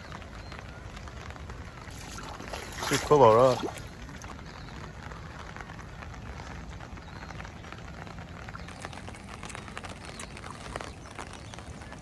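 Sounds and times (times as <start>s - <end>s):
rain pattering: 0.0s - 12.0s
wind buffeting microphone: 0.0s - 12.0s.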